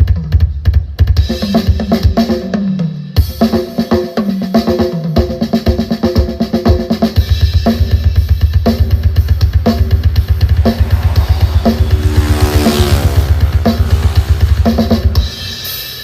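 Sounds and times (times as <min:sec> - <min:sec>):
drum-heavy music through subwoofer: 0:00.0 - 0:10.5.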